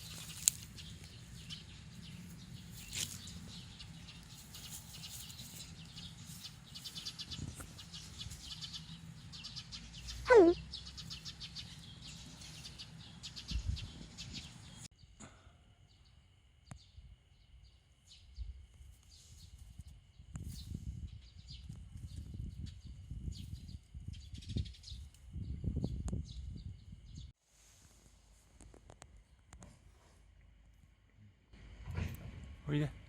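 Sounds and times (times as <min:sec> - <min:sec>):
rustling and light clicking: 0:04.1 - 0:06.9
cat meowing: 0:10.3 - 0:10.6.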